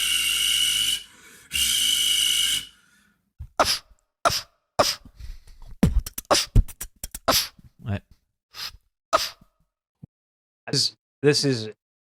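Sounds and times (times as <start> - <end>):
beatbox hissing blast: 3.6 - 5.1, 5.8 - 7.6, 8.6 - 9.4
sharp cough-like bursts: 3.6 - 5.1, 6.3 - 6.6, 7.3 - 7.6, 8.6 - 9.4.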